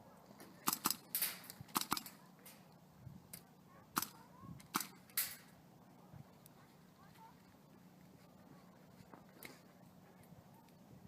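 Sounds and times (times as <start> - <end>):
distant airsoft gun shots: 4.0 - 5.5.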